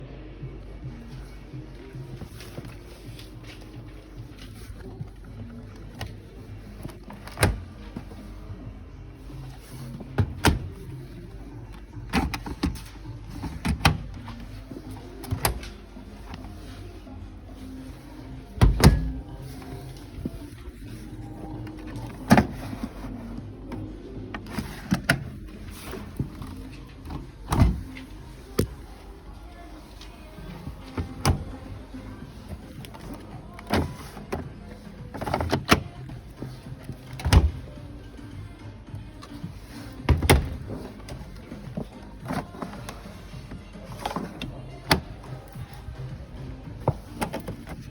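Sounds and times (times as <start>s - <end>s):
appliance doors knocking and thudding: 10.1s - 10.9s, 18.6s - 19.4s, 24.4s - 28.8s, 30.5s - 34.1s, 40.1s - 41.0s.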